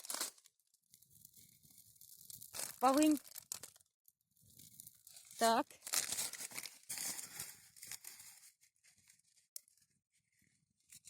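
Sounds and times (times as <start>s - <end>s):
dry herbs rustling: 1.2s - 3.8s, 4.6s - 8.6s.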